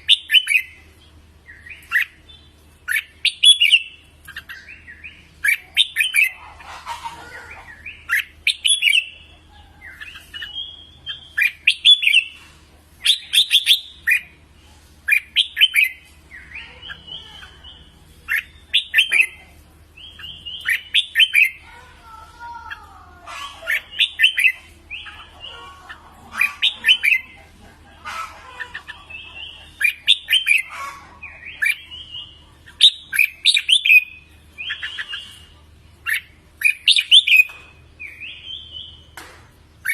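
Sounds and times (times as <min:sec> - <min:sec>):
bird singing whistled phrases: 0:02.9 - 0:06.4, 0:20.0 - 0:21.6, 0:31.4 - 0:35.4, 0:36.1 - 0:39.0.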